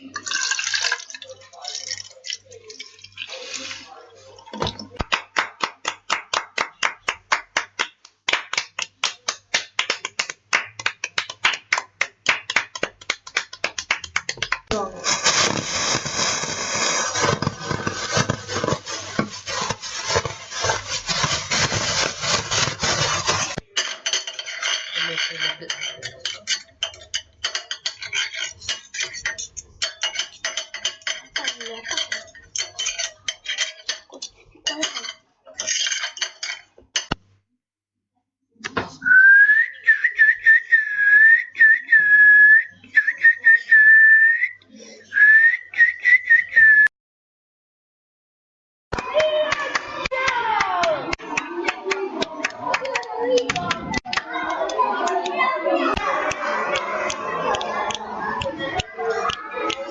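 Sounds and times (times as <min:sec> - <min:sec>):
dense noise: 0:14.7 - 0:23.6
dishes and cutlery clattering: 0:17.2 - 0:37.2
person whistling a tune: 0:39.0 - 0:46.9.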